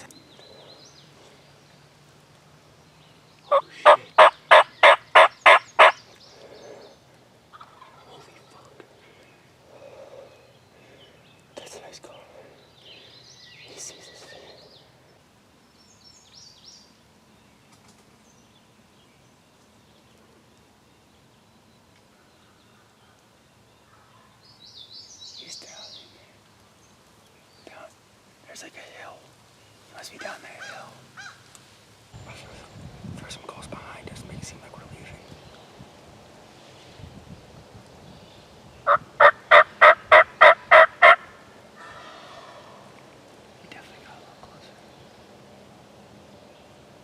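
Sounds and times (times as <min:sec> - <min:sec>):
faint bird calls: 0:03.0 - 0:17.0, 0:21.5 - 0:31.5, 0:38.1 - 0:45.7
turkey call yelps: 0:03.5 - 0:06.0, 0:38.9 - 0:42.8.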